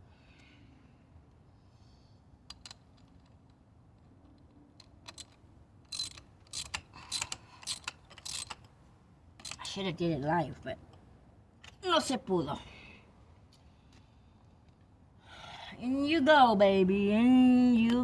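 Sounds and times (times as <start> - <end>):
hand tools clicking on engine parts: 2.5 - 8.8.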